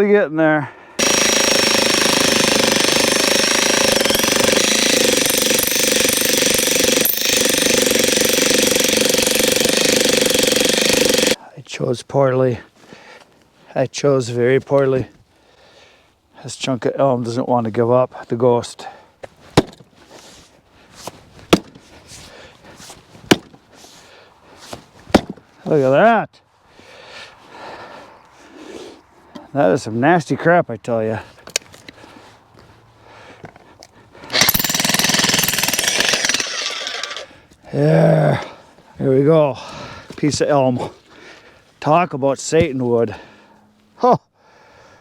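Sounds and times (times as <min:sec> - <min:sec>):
jackhammer hammering into wood: 0:01.0 - 0:11.4, 0:19.6 - 0:19.8, 0:21.5 - 0:21.8, 0:23.3 - 0:23.6, 0:34.2 - 0:37.4
sharp knocks on firewood: 0:19.6 - 0:19.8, 0:23.3 - 0:23.6, 0:25.1 - 0:25.4.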